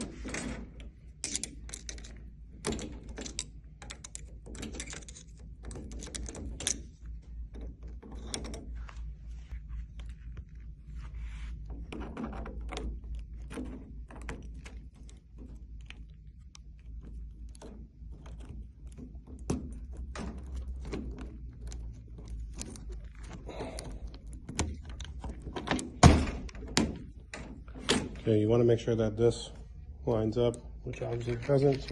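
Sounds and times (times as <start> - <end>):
small metal clicks and scrapes: 0.0 - 9.1, 11.8 - 25.9.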